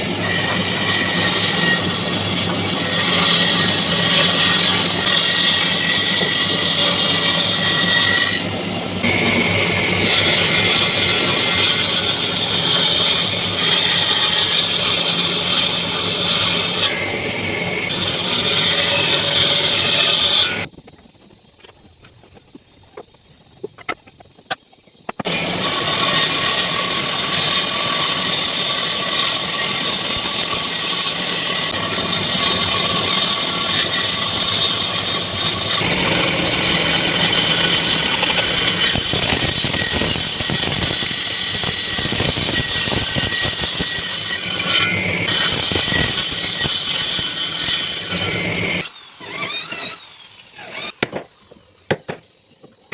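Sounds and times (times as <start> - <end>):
drum sander sanding wood: 25.3 - 39.7.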